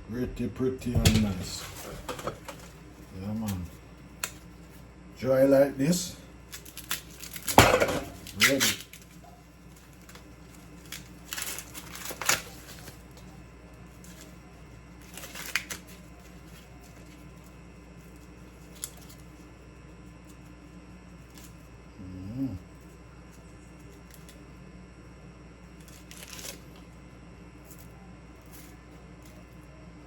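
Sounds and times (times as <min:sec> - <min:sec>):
faint low hum: 0:00.0 - 0:30.0
dry corn husks rustling: 0:08.2 - 0:13.2
brief low voice-like sound: 0:22.0 - 0:22.6.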